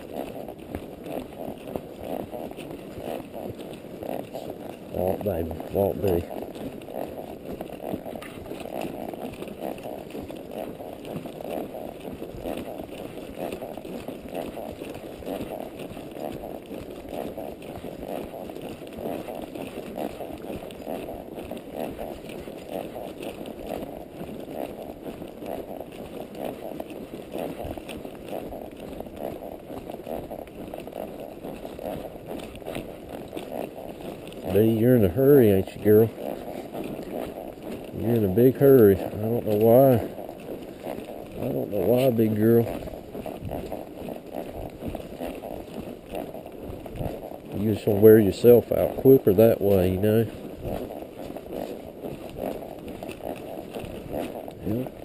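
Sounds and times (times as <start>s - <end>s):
horse hooves on dirt trail: 0.0s - 55.0s.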